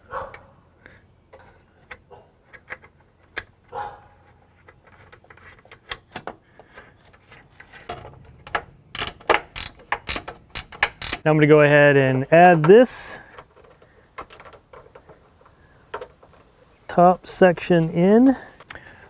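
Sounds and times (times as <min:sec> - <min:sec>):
small metal hardware clicking: 0:07.6 - 0:11.2.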